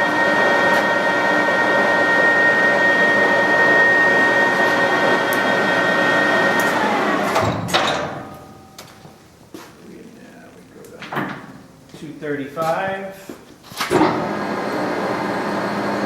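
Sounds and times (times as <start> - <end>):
lathe gears whining: 0.0 - 7.6.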